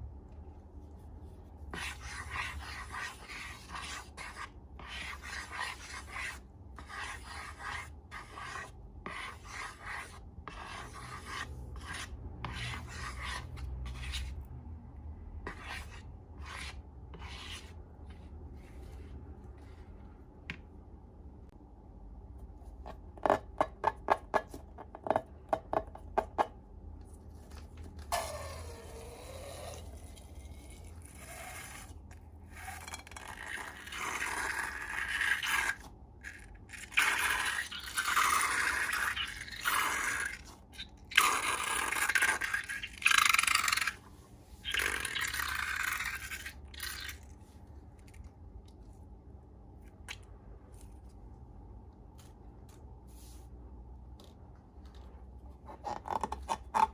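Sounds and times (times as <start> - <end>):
slime scraping strokes: 0.9 - 14.4, 15.5 - 20.0, 28.1 - 48.2.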